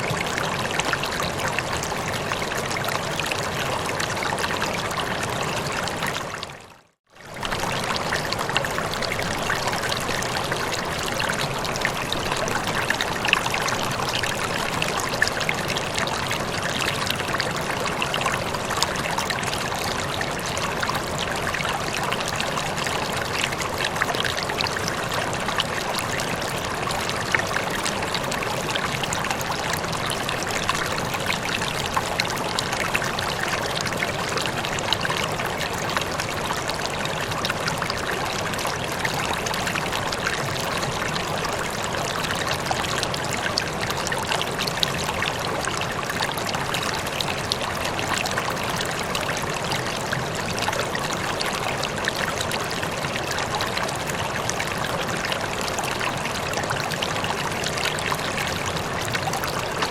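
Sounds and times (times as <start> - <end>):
running water trickling and splashing: 0.0 - 59.9.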